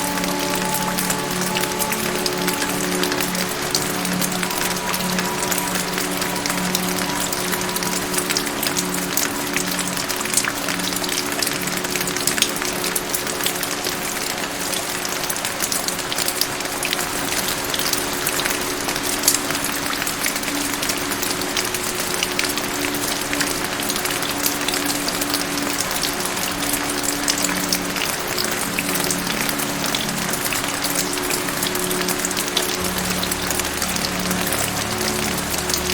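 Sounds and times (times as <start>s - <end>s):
raindrops ticking on surface: 0.0s - 35.9s
soft music with low notes: 0.0s - 35.9s
steady rain hiss: 0.0s - 35.9s.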